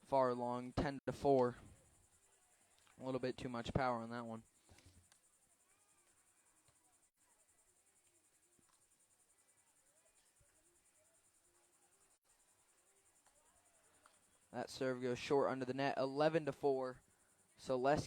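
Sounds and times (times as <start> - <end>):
faint pulsing insect chirr: 0.0 - 18.0.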